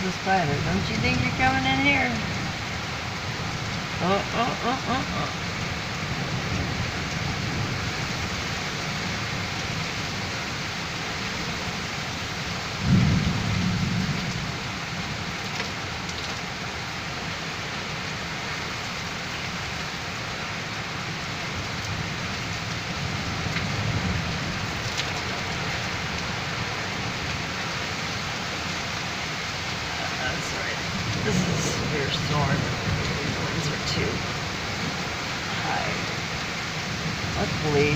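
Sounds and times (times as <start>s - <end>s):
thunder rumble: 0.0s - 10.5s, 12.4s - 16.7s, 21.4s - 28.4s, 29.8s - 37.9s
heavy rain: 0.0s - 37.9s
wind: 0.0s - 37.9s
thunder clap: 12.8s - 14.6s.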